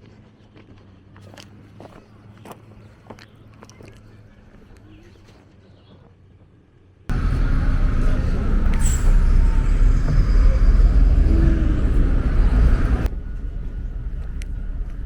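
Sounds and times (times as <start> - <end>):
heavy vehicle rumble: 7.1 - 15.0.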